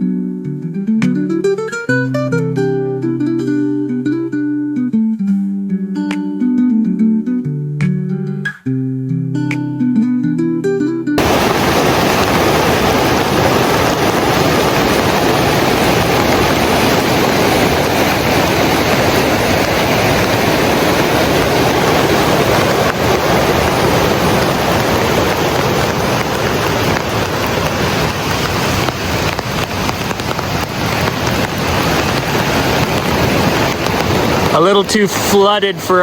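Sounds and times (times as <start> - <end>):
rushing water: 11.2 - 36.0.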